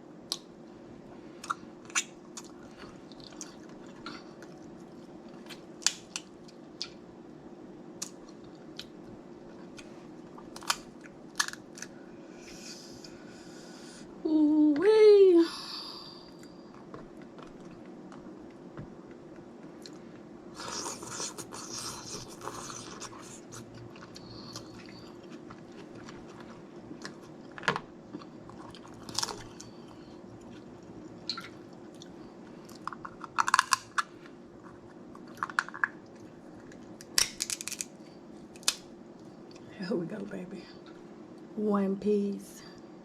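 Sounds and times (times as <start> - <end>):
chewing and crunching: 1.4 - 7.0, 16.4 - 39.7
crab shells cracking: 5.5 - 6.3, 10.5 - 11.9, 32.7 - 34.2, 35.2 - 38.9.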